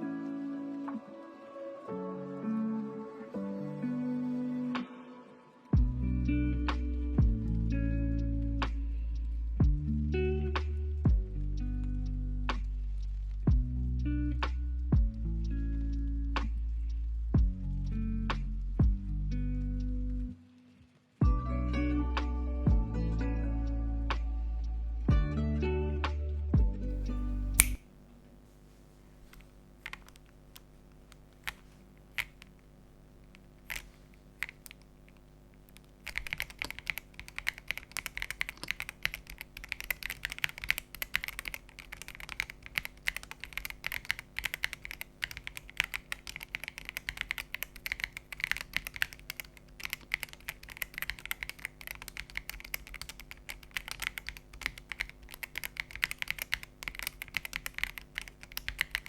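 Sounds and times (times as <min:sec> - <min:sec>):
typing on mechanical keyboard: 0:29.8 - 0:30.2, 0:31.4 - 0:32.5, 0:33.7 - 0:34.8, 0:35.8 - 0:59.0.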